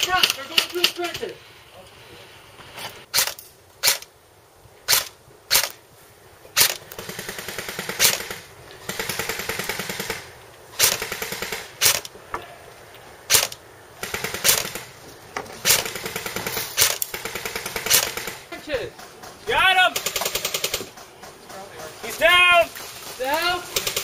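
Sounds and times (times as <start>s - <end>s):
airsoft gun single shots: 3.1s - 4.1s, 4.9s - 5.8s
airsoft rifle full-auto bursts: 3.1s - 4.1s, 4.9s - 5.8s, 6.6s - 12.1s, 13.3s - 15.0s, 15.6s - 18.6s, 19.5s - 21.1s, 23.2s - 24.0s.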